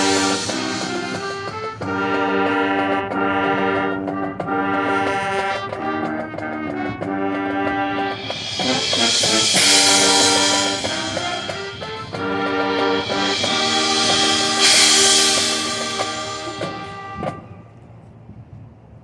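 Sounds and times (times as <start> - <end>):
cymbal crash: 0.0 - 2.5, 7.8 - 17.2
marching band playing: 0.0 - 17.4.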